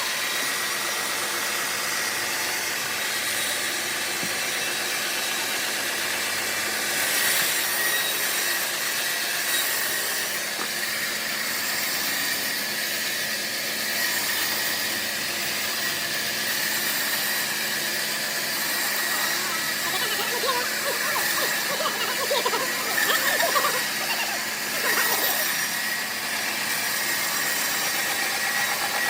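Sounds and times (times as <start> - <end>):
band sawmill cutting log: 0.0 - 29.0.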